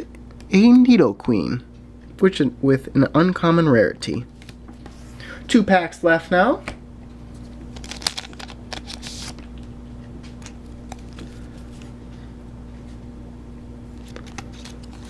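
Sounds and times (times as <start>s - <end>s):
steady low hum: 0.0s - 15.0s
foil pack crinkling and tearing: 7.3s - 9.7s, 13.9s - 15.0s.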